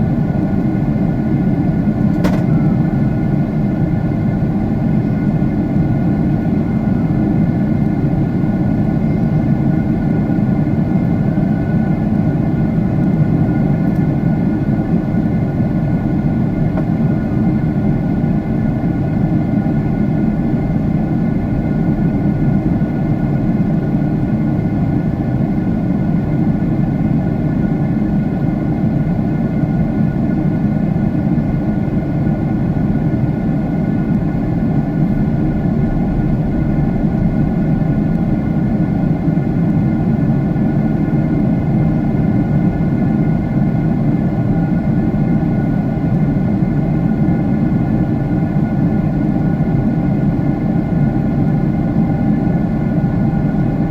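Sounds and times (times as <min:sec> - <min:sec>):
jet engine cabin drone: 0:00.0 - 0:53.9
faint whining tones: 0:32.6 - 0:42.4.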